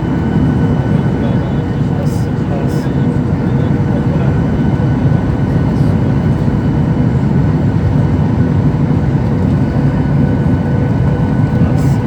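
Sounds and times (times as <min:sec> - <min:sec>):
jet engine cabin rumble: 0:00.0 - 0:12.0.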